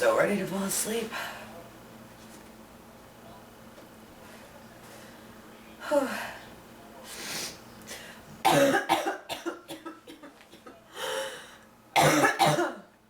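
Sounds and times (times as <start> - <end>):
woman coughing: 8.5 - 10.7, 12.0 - 12.9.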